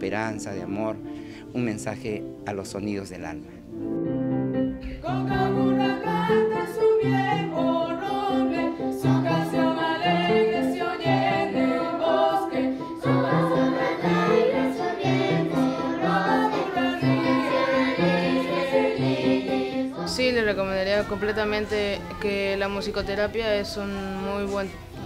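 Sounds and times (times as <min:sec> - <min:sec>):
choir singing: 0:05.0 - 0:22.4.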